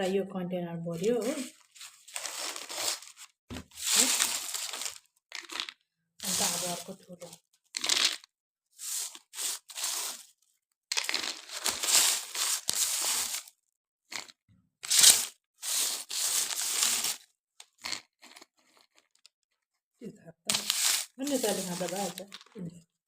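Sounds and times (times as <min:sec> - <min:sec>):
fried snacks rustling and crunching: 0:01.2 - 0:06.8, 0:08.8 - 0:10.3, 0:10.9 - 0:13.5, 0:14.1 - 0:18.8, 0:20.5 - 0:22.5.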